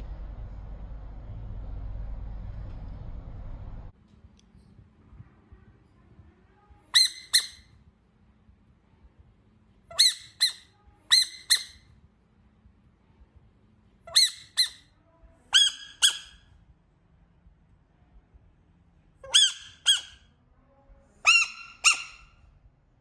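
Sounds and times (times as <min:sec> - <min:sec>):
frog squeaking: 0:15.6 - 0:16.4, 0:19.2 - 0:20.2, 0:21.2 - 0:22.3.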